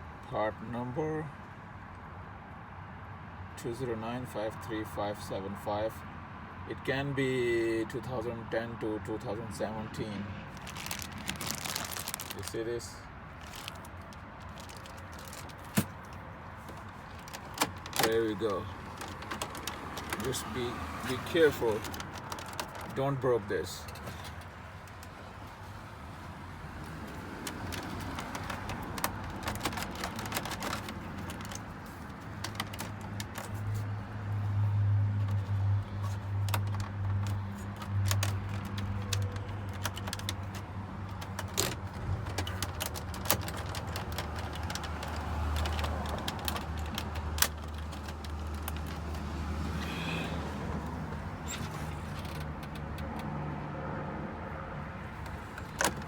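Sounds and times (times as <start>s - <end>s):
plastic clicks and rattles: 13.4s - 20.4s, 21.7s - 23.0s, 26.8s - 33.6s, 36.4s - 49.2s, 52.1s - 53.3s.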